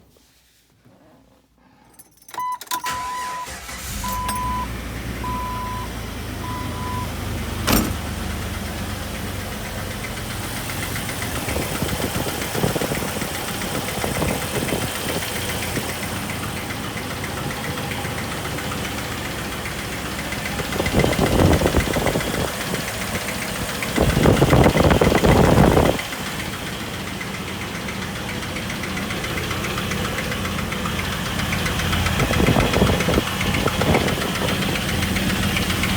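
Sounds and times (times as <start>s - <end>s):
dashboard warning chime: 2.3s - 8.1s
car engine starting and idling: 2.3s - 35.9s
engine ticking knock: 7.5s - 35.9s.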